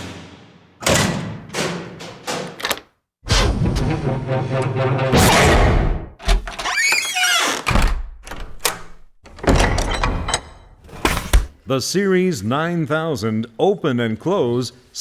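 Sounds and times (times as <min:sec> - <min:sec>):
door slamming: 0:05.2 - 0:10.2
door rattling open: 0:06.2 - 0:10.6
squealing hinge creak: 0:06.5 - 0:07.8.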